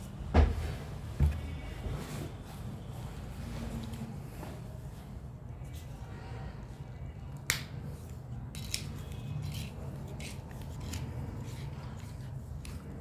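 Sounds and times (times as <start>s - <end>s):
metal parts clicking and scraping: 8.5s - 12.8s.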